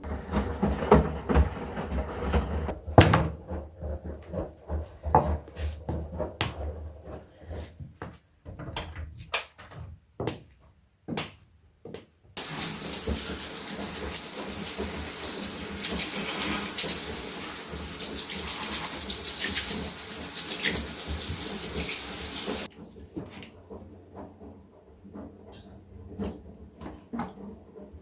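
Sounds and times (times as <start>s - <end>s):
running water from a tap: 12.4s - 22.7s.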